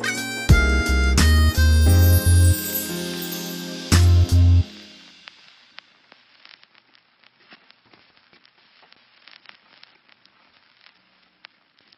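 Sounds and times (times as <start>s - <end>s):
low hiss: 0.0s - 11.9s
faint irregular crackling clicks: 5.2s - 11.9s.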